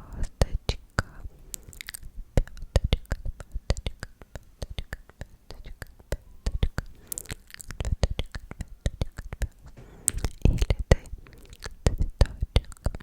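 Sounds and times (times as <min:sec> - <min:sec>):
wet mouth clicks and smacks: 0:01.0 - 0:13.0
breathy hiss: 0:09.7 - 0:11.8.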